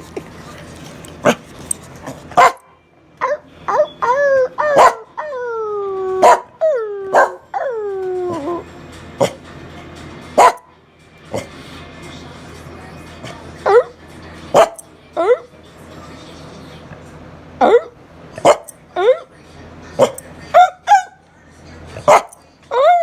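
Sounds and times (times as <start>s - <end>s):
dog barking: 2.3s - 4.0s, 4.6s - 5.2s, 6.2s - 7.5s, 10.4s - 10.7s, 14.5s - 15.5s, 17.6s - 19.2s, 20.0s - 21.2s, 22.0s - 23.0s
dog whining and yowling: 3.2s - 8.7s, 22.1s - 23.0s.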